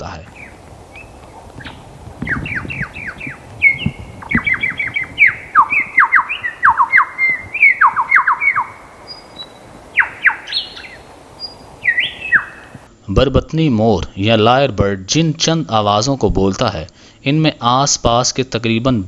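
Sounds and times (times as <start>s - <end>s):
lyrebird calling: 0.2s - 12.9s.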